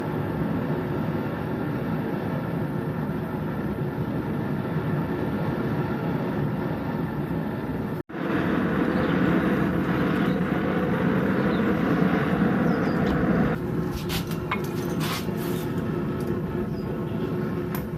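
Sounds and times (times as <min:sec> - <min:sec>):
forge roaring: 0:07.6 - 0:17.9.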